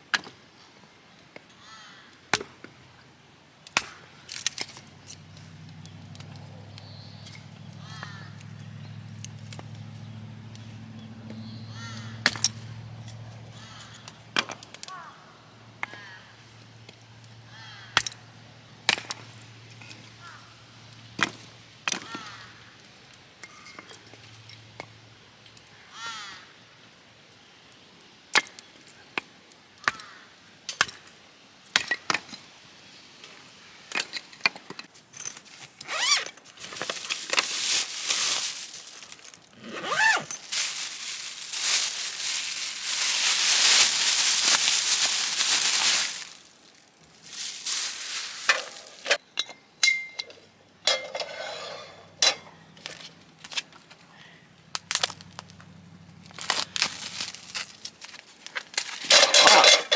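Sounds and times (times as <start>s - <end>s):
utensils and dishes clinking: 47.4s - 52.5s, 59.1s - 59.9s.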